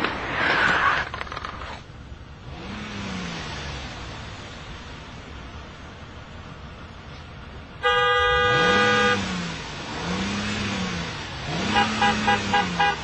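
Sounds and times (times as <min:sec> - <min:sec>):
traffic hum: 0:00.0 - 0:13.0
car horn blasting: 0:07.8 - 0:09.4, 0:11.6 - 0:13.0.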